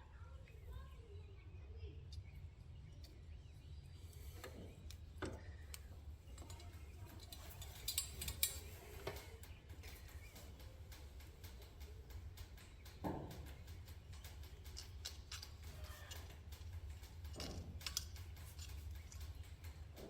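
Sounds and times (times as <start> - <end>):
steady low hum: 0.0 - 20.0
light clicks and knocks of tools: 4.0 - 20.0.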